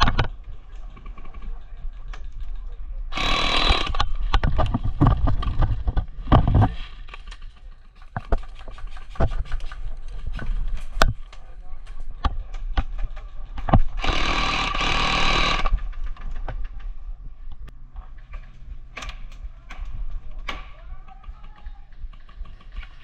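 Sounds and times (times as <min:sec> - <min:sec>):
clicks and knocks: 0:15.6 - 0:23.0.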